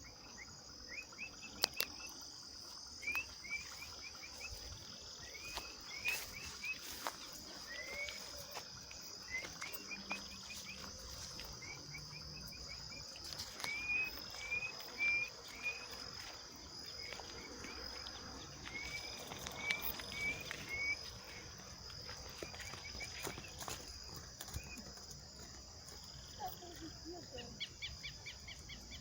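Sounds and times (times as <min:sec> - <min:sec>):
crickets trilling: 0:00.0 - 0:29.0.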